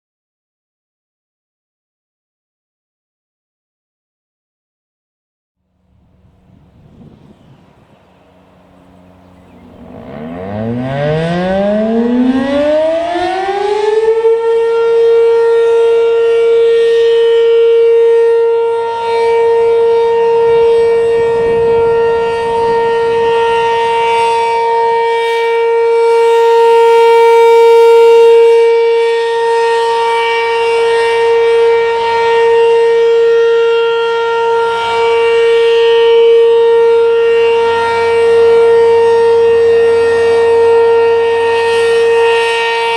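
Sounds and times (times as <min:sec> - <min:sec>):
steady siren alert tone: 0:05.8 - 0:42.9
warning siren winding up: 0:05.9 - 0:29.0.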